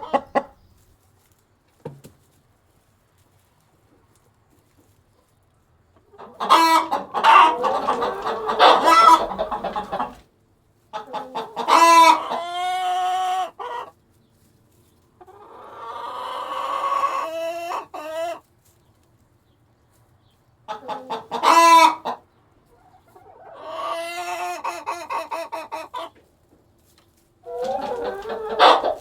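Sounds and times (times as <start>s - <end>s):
hens clucking and cackling: 0.0s - 0.7s, 6.0s - 10.2s, 11.0s - 14.0s, 15.2s - 18.5s, 20.7s - 26.3s, 27.4s - 29.0s
rooster crowing: 6.5s - 10.2s, 27.5s - 29.0s.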